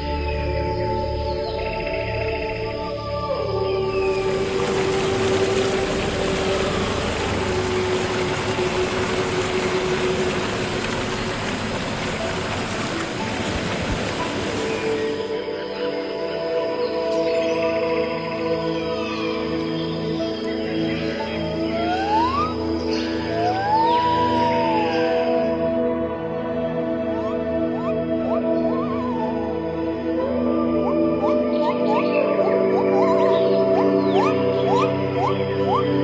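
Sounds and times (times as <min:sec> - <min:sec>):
forest ambience rushing noise: 0:03.9 - 0:15.4.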